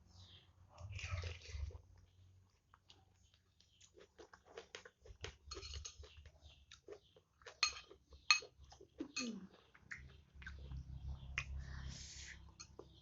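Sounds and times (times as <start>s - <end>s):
mouth sounds of eating: 0.8s - 13.0s
cutlery clinking against a bowl: 5.2s - 6.2s, 7.4s - 9.4s, 12.6s - 13.0s.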